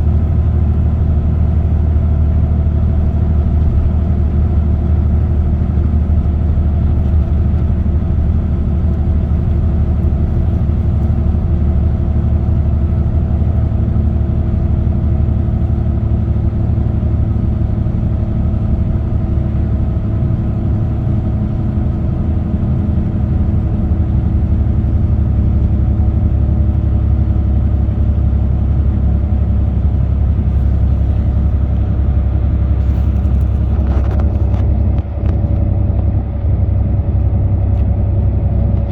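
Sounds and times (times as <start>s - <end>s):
faint engine hum: 0.0s - 38.9s
road and tyre rumble: 0.0s - 38.9s.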